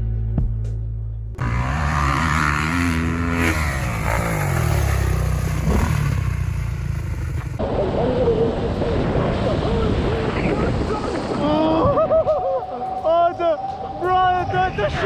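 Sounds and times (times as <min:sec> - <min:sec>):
engine running and revving: 0:01.4 - 0:07.6.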